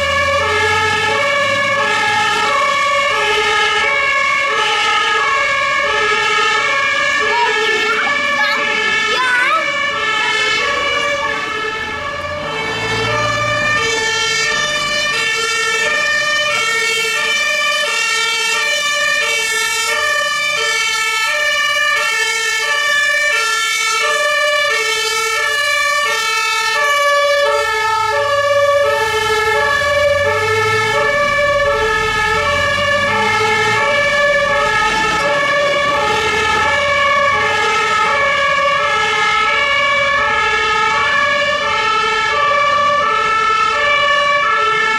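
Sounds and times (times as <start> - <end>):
vehicle engine rumble: 0.0 - 17.8, 26.9 - 43.2
two-tone sirens: 0.0 - 44.9.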